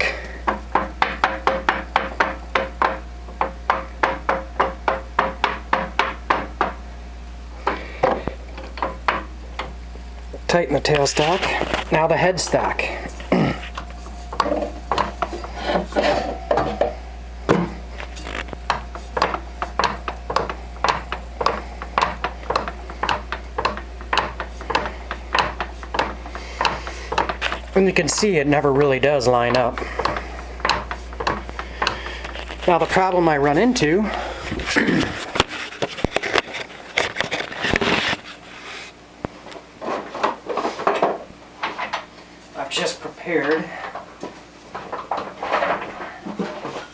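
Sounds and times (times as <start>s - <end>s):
steady low hum: 0.0s - 46.9s
metal clicks and clunks: 7.6s - 9.8s, 10.4s - 36.4s
objects scraping and clattering: 10.4s - 46.9s
scuffing noises: 24.4s - 40.8s.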